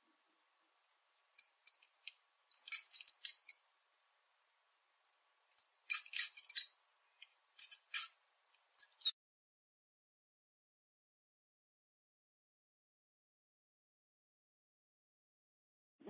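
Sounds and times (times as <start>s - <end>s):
small animal squeaking and chirping: 1.4s - 1.8s, 2.5s - 3.6s, 5.6s - 6.8s, 7.6s - 8.2s, 8.8s - 9.2s.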